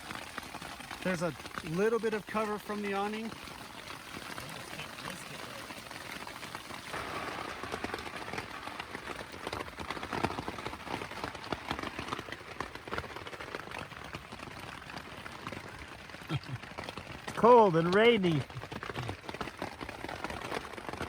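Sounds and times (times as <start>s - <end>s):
rain pattering on a tent: 0.0s - 21.0s.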